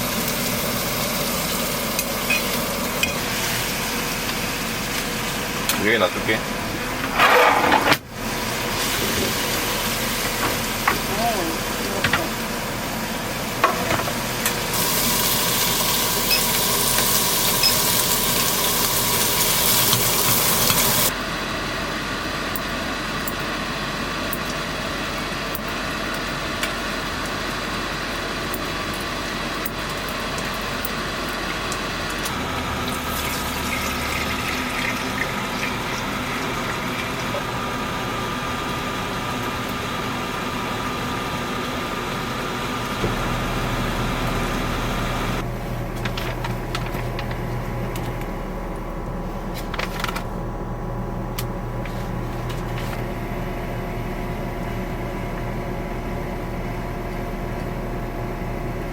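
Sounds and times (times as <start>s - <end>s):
food sizzling in a pan: 14.5s - 21.1s.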